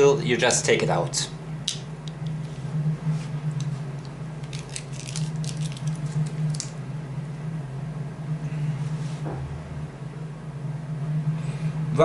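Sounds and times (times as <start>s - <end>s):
steady low hum: 0.0s - 12.0s
plastic parts clicking and rustling: 4.5s - 6.7s.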